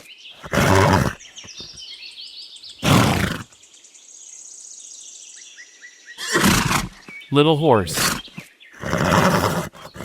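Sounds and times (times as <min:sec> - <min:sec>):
horse snorting: 0:00.0 - 0:01.2, 0:02.8 - 0:03.5, 0:07.9 - 0:10.0
small birds chirping: 0:00.0 - 0:10.0.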